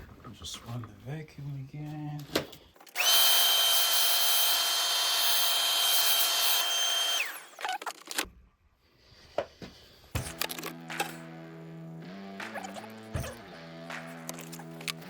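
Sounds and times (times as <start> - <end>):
small vacuum cleaner whining: 2.9 - 7.7.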